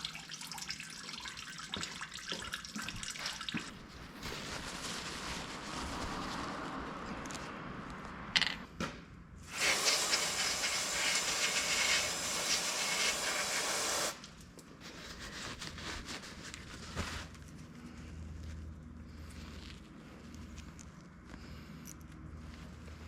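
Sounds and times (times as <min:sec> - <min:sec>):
compressed air hissing: 0:09.4 - 0:14.2.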